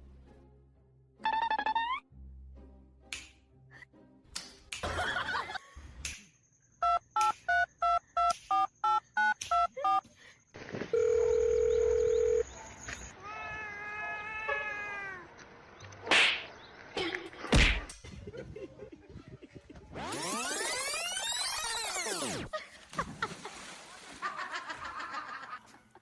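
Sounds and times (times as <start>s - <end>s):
steady dial tone: 10.9s - 12.4s
telephone keypad beeps: 11.0s - 12.4s.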